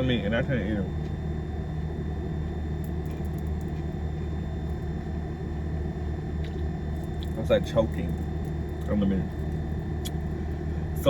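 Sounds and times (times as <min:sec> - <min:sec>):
car engine idling: 0:06.2 - 0:11.0.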